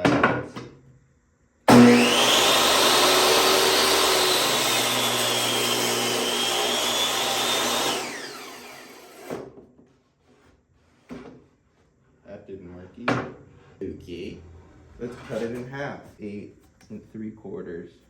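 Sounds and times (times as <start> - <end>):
electric saw whining: 1.7 - 9.4.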